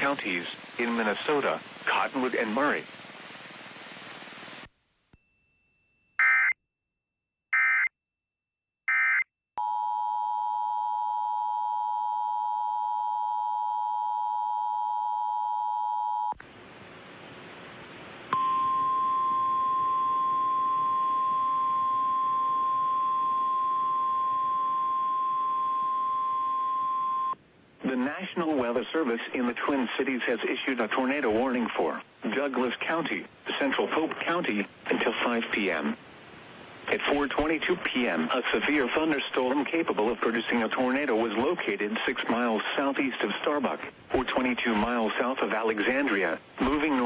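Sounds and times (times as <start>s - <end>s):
radio static: 0.0s - 4.7s, 27.8s - 36.0s, 36.8s - 47.0s
two-tone attention signal: 18.4s - 27.4s.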